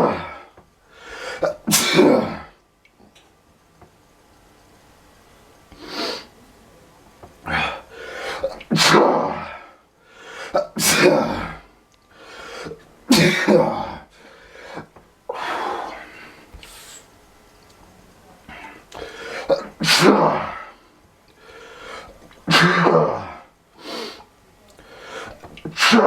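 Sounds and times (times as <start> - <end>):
person sneezing: 1.3 - 2.5, 7.5 - 9.7, 10.5 - 11.6, 13.1 - 14.0, 19.3 - 20.7, 22.5 - 24.2, 25.2 - 26.0.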